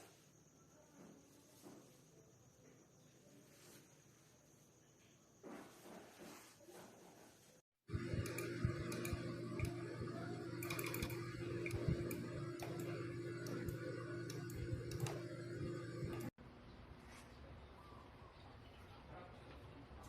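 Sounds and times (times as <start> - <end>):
steady low hum: 7.9 - 16.4.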